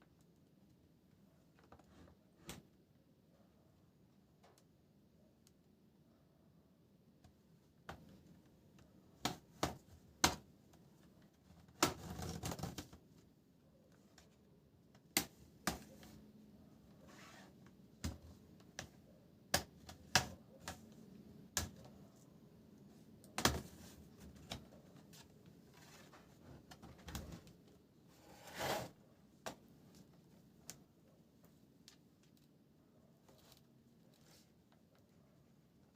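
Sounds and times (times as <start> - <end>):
short scrape: 28.2 - 29.0.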